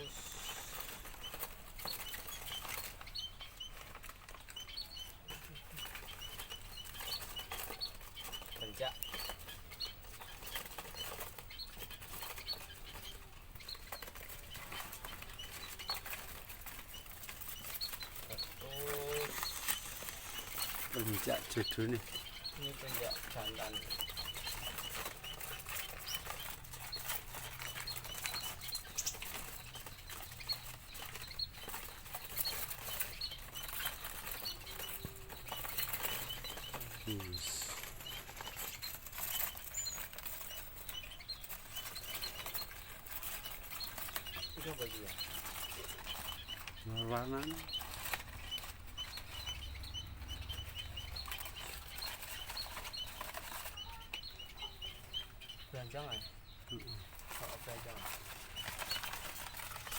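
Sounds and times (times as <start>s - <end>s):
high bird chirps: 0.0s - 59.9s
birds wings flapping: 5.4s - 53.8s.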